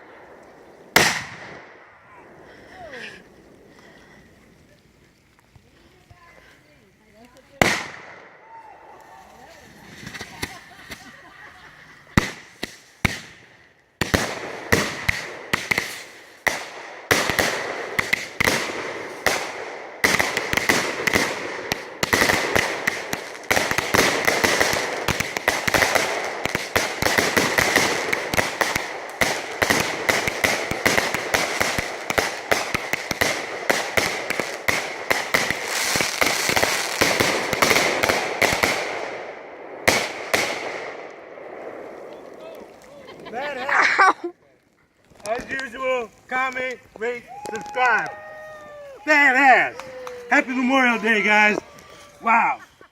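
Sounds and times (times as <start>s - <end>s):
firecrackers cracking: 0.0s - 52.9s
firecracker bangs: 0.9s - 1.8s, 7.6s - 8.3s, 12.2s - 41.0s.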